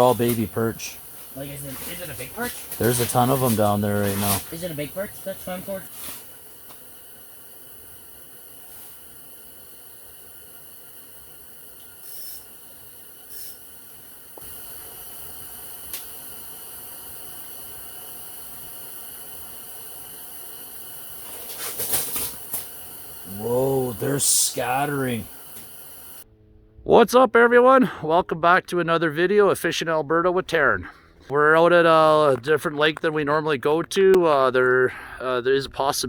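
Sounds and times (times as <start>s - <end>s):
short rustling burst: 0.0s - 9.8s, 20.8s - 26.2s
steady high hiss: 0.0s - 26.3s.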